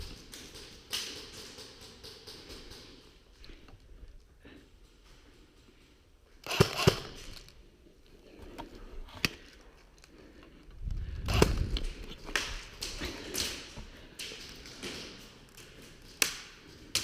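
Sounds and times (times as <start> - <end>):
sharp snaps and knocks: 0.0 - 3.6, 11.3 - 17.0.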